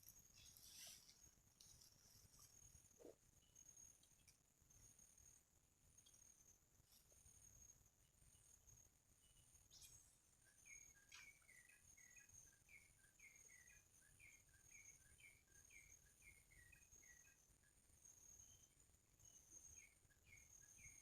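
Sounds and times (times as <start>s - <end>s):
bird chirping: 6.0s - 21.0s.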